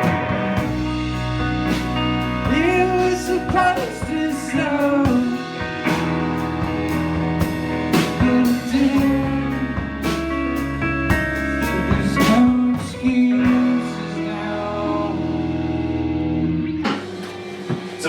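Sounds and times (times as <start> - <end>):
rock band playing: 0.0 - 18.0
person singing: 2.4 - 6.0, 7.9 - 10.2, 11.6 - 15.7.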